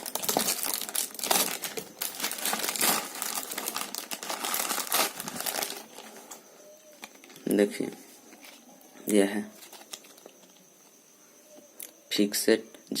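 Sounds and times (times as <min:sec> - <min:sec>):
packaging crinkling and rustling: 0:00.0 - 0:08.7, 0:09.6 - 0:10.6.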